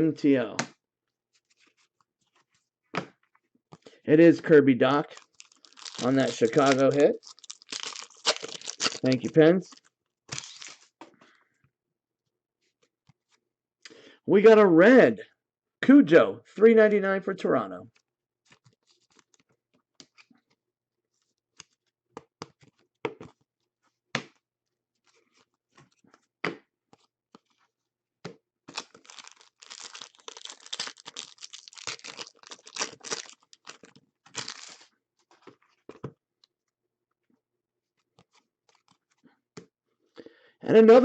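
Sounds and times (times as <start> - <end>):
foil wrapper tearing and crinkling: 5.1 - 10.9, 28.7 - 34.9.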